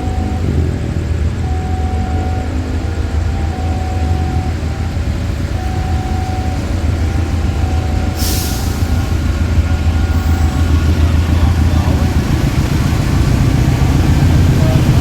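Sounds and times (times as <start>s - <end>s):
locomotive engine humming: 0.0s - 15.0s
short hiss burst: 8.2s - 9.2s.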